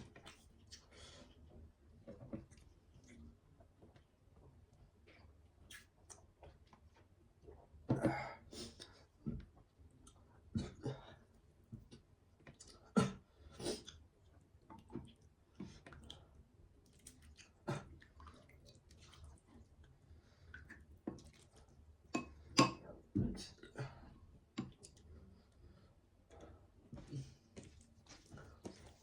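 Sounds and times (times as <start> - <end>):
person chewing food: 26.3 - 29.0.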